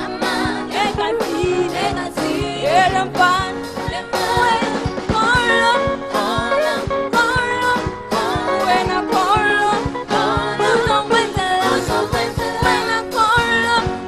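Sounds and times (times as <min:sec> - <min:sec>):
bass: 0:00.0 - 0:14.0
gospel choir singing: 0:00.0 - 0:14.0
steady drum beat: 0:00.0 - 0:14.0.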